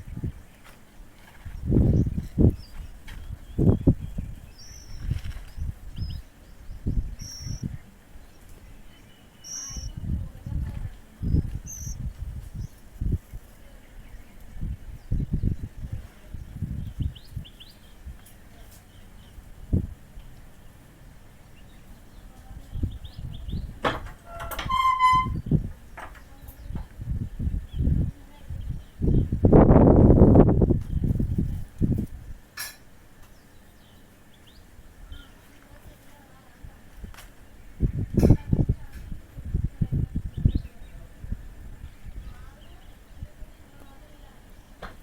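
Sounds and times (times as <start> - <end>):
birds chirping: 0.0 - 29.6, 32.8 - 45.0
squeaky call: 24.3 - 25.4.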